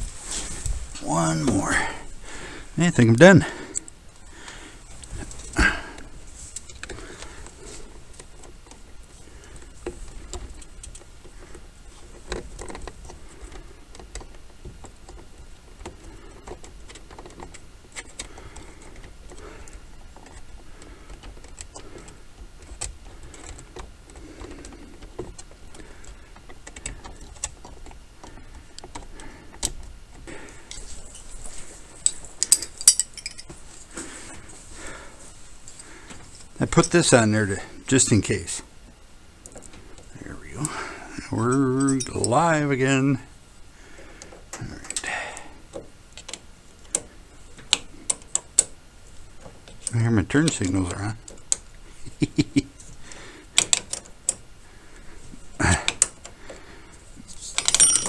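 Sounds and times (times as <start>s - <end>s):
hand tools clicking and clinking: 32.0s - 33.6s, 41.4s - 42.6s, 57.6s - 58.0s
metallic jingling: 32.1s - 33.5s, 41.4s - 42.6s, 57.6s - 58.0s.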